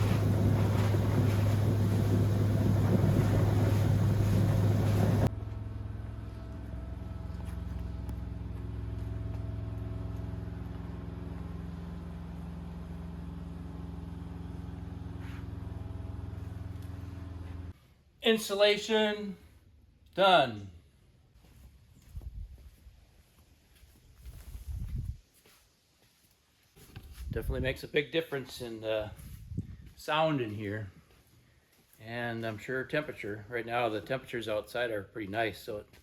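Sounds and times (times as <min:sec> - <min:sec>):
mechanical hum with tones: 0:00.0 - 0:17.7
machine noise with low hum: 0:00.0 - 0:17.8.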